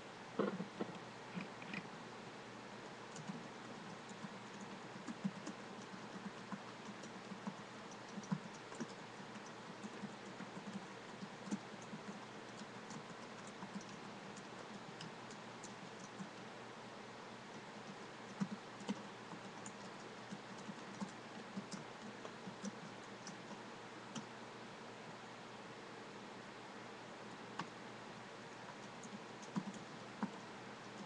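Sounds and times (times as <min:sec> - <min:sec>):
computer keyboard typing: 0:03.1 - 0:16.5, 0:17.5 - 0:24.3, 0:28.7 - 0:31.0.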